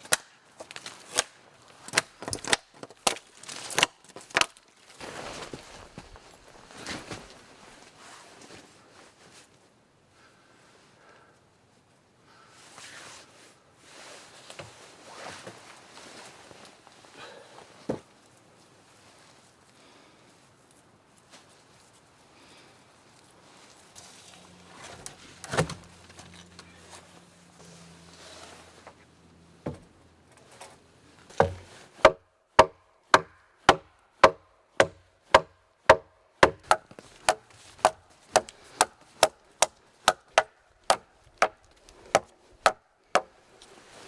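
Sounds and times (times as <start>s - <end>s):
tool chopping wood: 1.9s - 4.6s, 25.4s - 25.9s, 29.6s - 29.9s, 31.3s - 43.4s.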